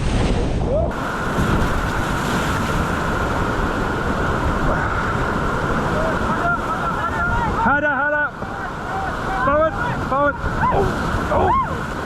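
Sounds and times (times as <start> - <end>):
wind buffeting microphone: 0.0 - 7.7
white-water rapids rushing: 0.8 - 12.0.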